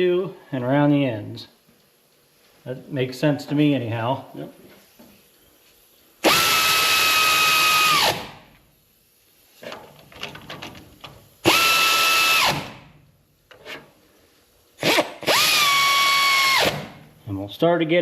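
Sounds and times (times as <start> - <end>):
air wrench whining: 6.2 - 8.4, 11.4 - 12.8, 14.8 - 17.0.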